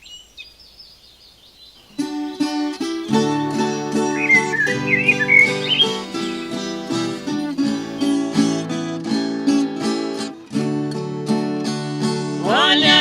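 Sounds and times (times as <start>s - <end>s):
acoustic guitar strumming: 1.9s - 13.0s.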